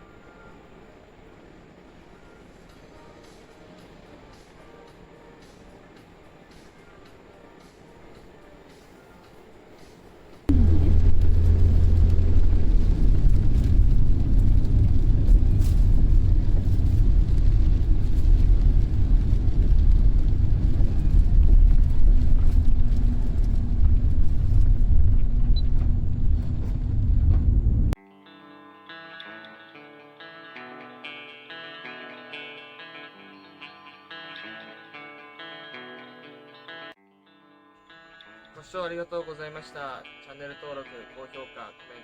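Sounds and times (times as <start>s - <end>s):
car rumbling on road: 10.5s - 28.0s.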